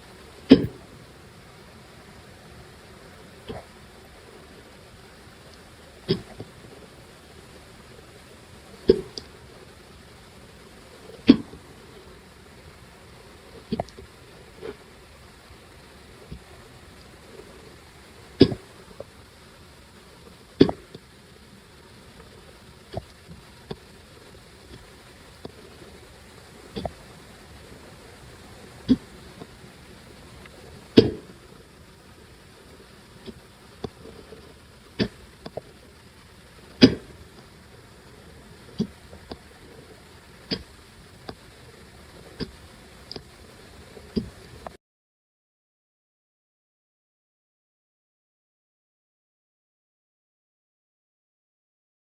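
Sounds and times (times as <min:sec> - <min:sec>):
faint little clicks: 0:33.1 - 0:44.8.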